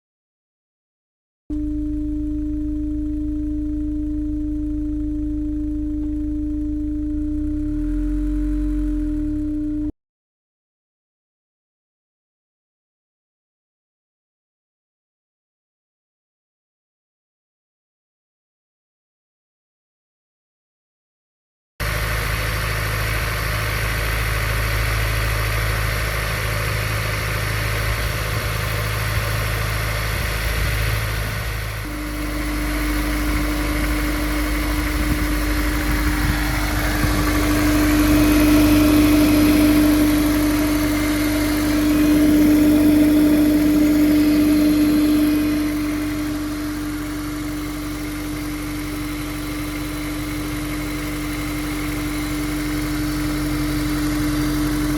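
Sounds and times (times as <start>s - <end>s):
car engine running: 1.5s - 9.9s, 21.8s - 54.9s
loud droning tone: 1.5s - 9.9s, 21.8s - 54.9s.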